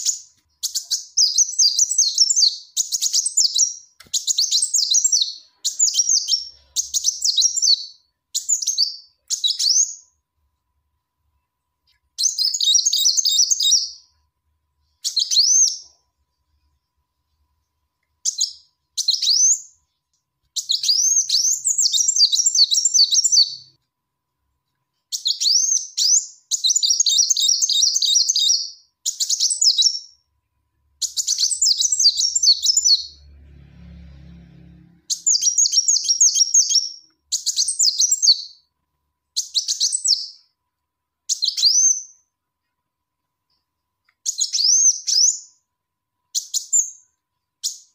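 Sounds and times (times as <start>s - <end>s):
sunbird chirps and trills: 31.0s - 33.6s.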